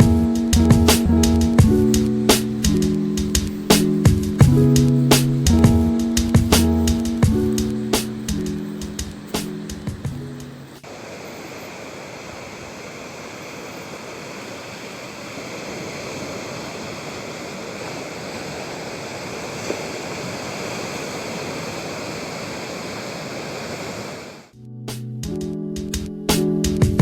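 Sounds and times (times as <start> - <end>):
ocean surf on beach: 8.4 - 24.5.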